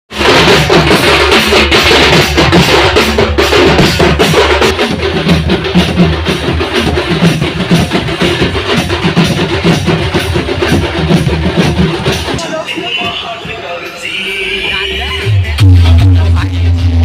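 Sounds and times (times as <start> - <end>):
loud dance music with heavy bass: 11.8 - 17.0.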